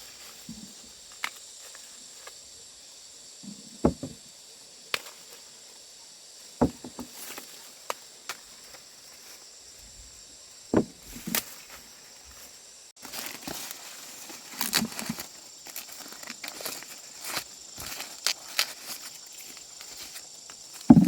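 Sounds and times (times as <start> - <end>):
high insect drone: 0.0 - 21.0
dull thumps and knocks: 3.5 - 4.3, 6.6 - 7.2, 10.7 - 11.5, 20.8 - 21.0.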